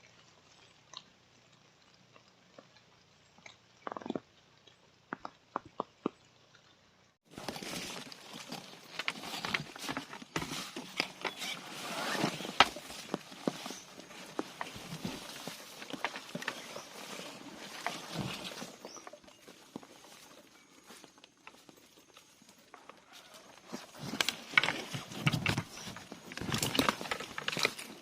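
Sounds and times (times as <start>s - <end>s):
footsteps on wet trail: 7.3s - 28.0s.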